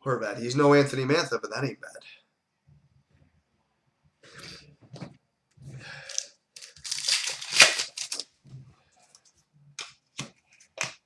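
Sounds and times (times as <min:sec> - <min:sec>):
card and wrapper rustling: 0:06.0 - 0:08.3
foil wrapper tearing: 0:06.1 - 0:08.2.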